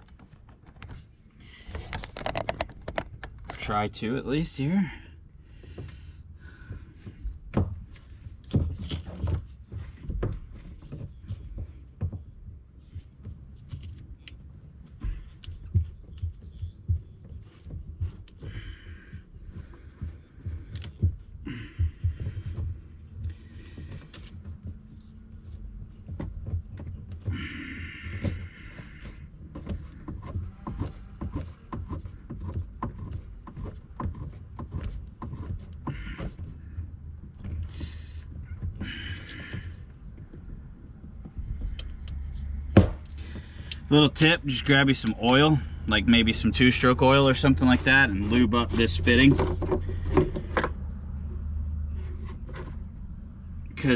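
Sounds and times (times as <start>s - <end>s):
knocks clicks and taps of handling: 1.7s - 3.7s, 5.5s - 43.9s.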